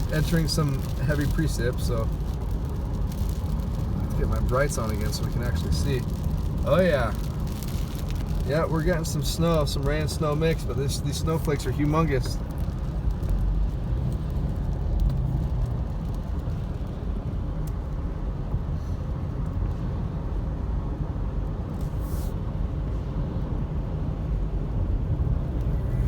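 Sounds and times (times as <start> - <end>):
road and engine rumble in car: 0.0 - 26.0
brief hiss: 21.8 - 22.4.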